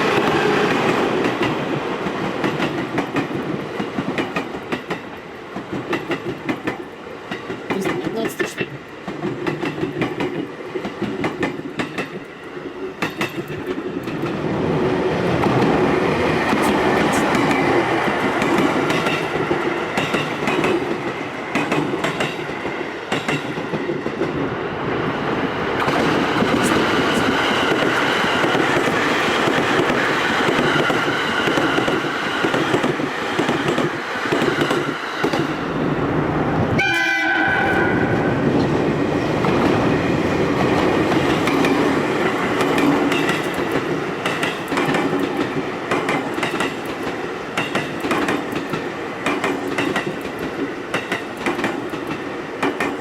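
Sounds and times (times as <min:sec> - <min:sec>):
train wheels clattering: 0:09.0 - 0:24.4, 0:37.0 - 0:53.0
train horn blast: 0:36.8 - 0:38.4.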